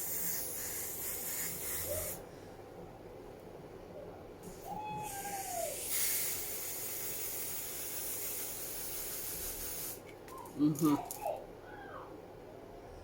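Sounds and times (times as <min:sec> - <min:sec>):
aerosol spray can hissing: 0:00.0 - 0:02.2, 0:05.4 - 0:10.0.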